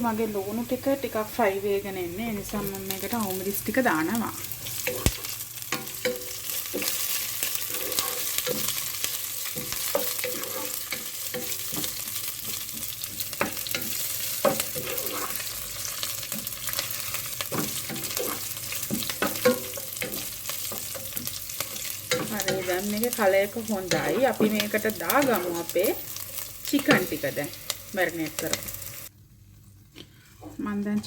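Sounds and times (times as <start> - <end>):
onions sizzling in hot oil: 0.0 - 29.6
utensil scraping and knocking pot: 4.8 - 15.6.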